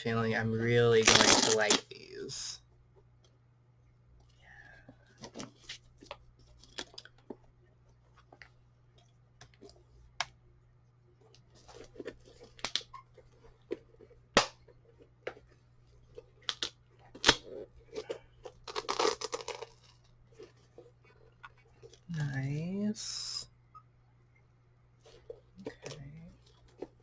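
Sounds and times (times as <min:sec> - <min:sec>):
roller skate clicks and knocks: 0:01.0 - 0:01.8
packaging rustling: 0:18.0 - 0:20.7.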